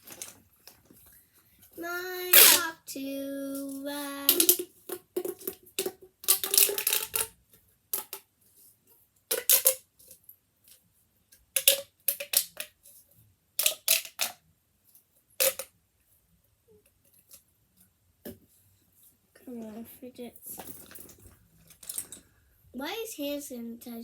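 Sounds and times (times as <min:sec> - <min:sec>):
plastic toys clattering: 0:00.0 - 0:02.8, 0:03.4 - 0:08.3, 0:09.3 - 0:10.8, 0:11.6 - 0:12.8, 0:13.6 - 0:14.4, 0:15.4 - 0:15.7, 0:20.4 - 0:22.3.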